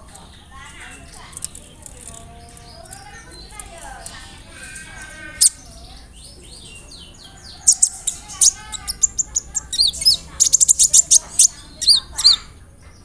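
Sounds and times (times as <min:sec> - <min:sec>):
sunbird singing: 0:00.1 - 0:13.0.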